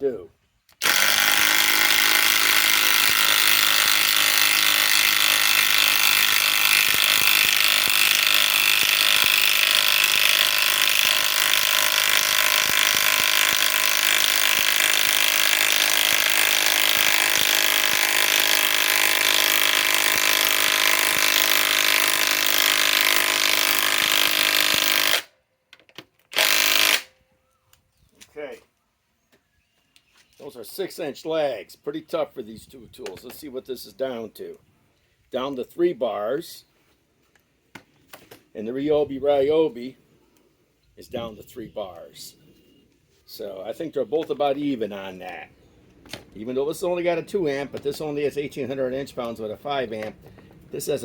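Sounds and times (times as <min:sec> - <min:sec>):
impact driver hammering: 0:00.8 - 0:25.3, 0:26.3 - 0:27.1.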